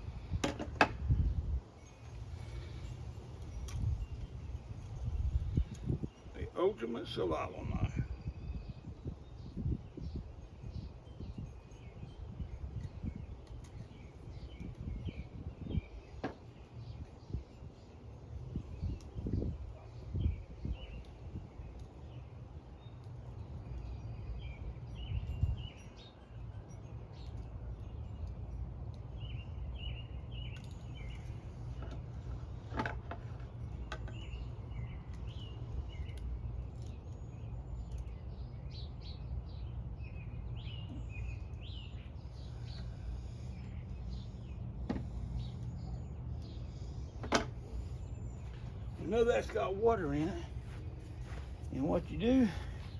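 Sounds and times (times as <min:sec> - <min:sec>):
steady low rumble: 0:00.0 - 0:00.4, 0:39.5 - 0:52.9
birds chirping: 0:00.0 - 0:52.9.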